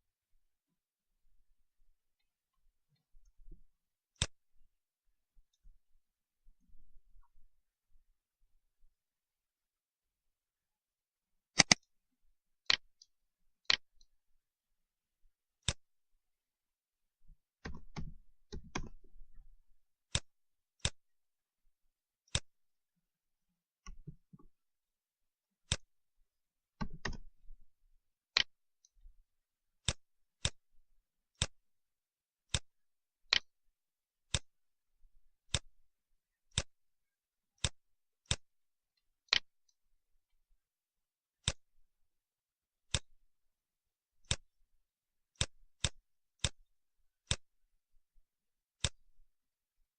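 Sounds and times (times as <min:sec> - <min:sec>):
mouse buttons clicking: 0:11.6 - 0:11.9, 0:15.6 - 0:15.9, 0:17.6 - 0:19.0, 0:26.8 - 0:27.3.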